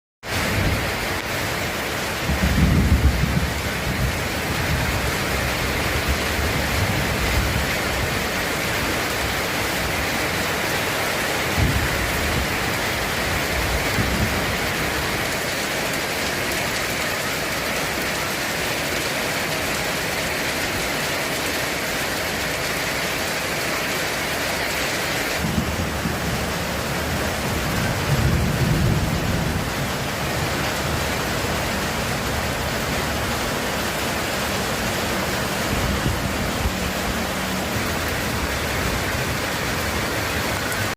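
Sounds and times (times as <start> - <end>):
heavy rain: 0.2 - 40.9
thunder rumbles: 2.1 - 8.3, 11.4 - 15.3, 25.4 - 34.3, 35.2 - 40.9.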